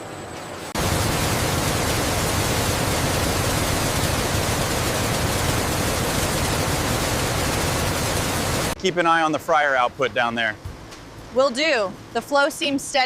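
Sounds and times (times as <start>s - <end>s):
loud rushing hiss: 0.8s - 8.8s.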